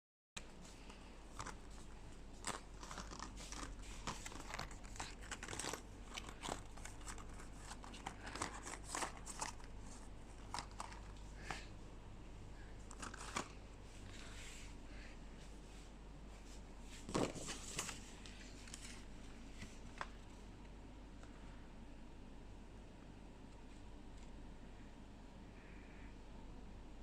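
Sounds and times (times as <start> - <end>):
packaging crinkling: 1.3 - 11.6, 12.9 - 13.6.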